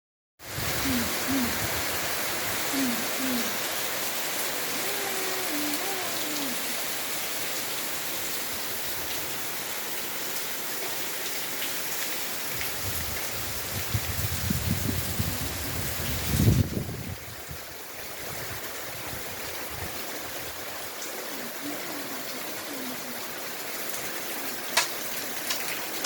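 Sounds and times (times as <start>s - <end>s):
steady rain falling: 0.4s - 26.0s
low hooting calls: 0.7s - 1.9s, 2.6s - 3.9s.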